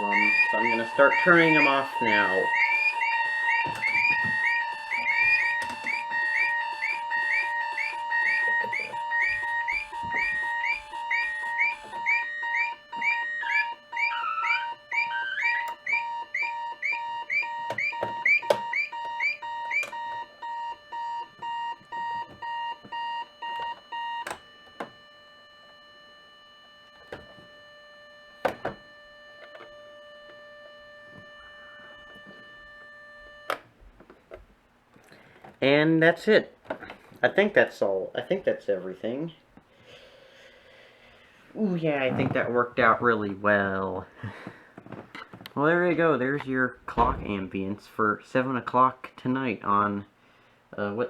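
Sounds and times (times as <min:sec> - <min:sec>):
alarm clocks beeping: 0:00.0 - 0:33.6.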